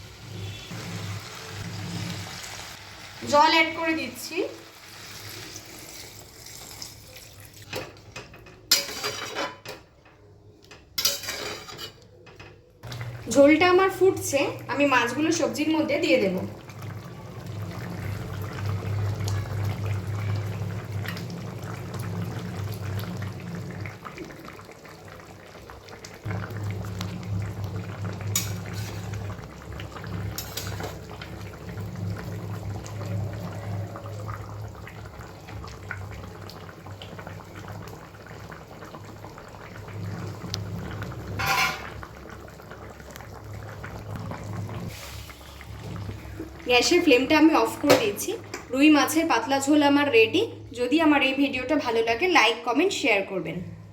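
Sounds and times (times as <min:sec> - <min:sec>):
curry boiling in a pan: 0:00.0 - 0:11.7, 0:12.8 - 0:50.0.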